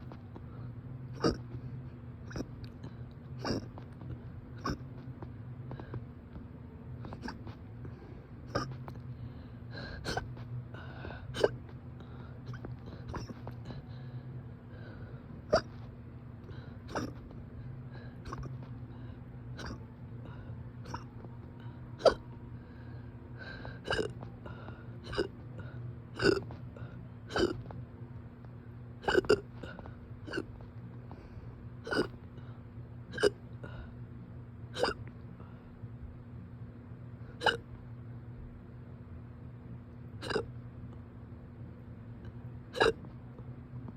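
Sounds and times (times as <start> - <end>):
person hiccuping: 1.2 - 1.6, 2.2 - 3.8, 4.6 - 5.0, 7.1 - 7.6, 8.5 - 8.9, 10.0 - 10.4, 11.3 - 11.6, 12.5 - 13.6, 15.5 - 15.8, 16.5 - 17.3, 18.2 - 18.7, 19.6 - 19.8, 20.8 - 21.2, 22.0 - 22.3, 23.8 - 24.3, 25.0 - 25.4, 26.2 - 26.6, 27.3 - 27.7, 29.0 - 30.6, 31.8 - 32.2, 33.1 - 33.5, 34.7 - 35.1, 37.4 - 37.7, 40.2 - 40.6, 42.7 - 43.1.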